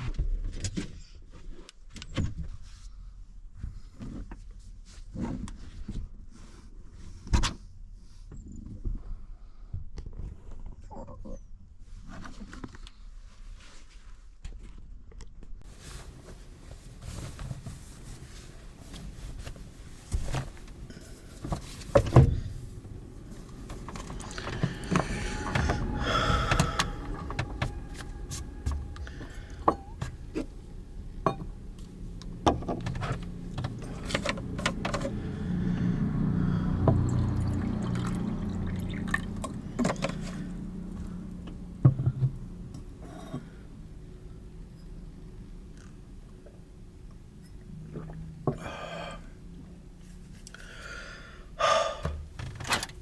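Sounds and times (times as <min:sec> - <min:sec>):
handling clicks and knocks: 0:18.9 - 0:35.3
liquid pouring: 0:36.7 - 0:41.2.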